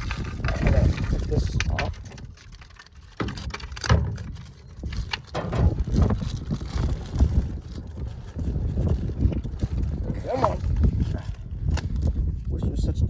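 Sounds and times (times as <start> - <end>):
packaging rustling and scraping: 0.0 - 12.4
low rumble: 3.4 - 12.1.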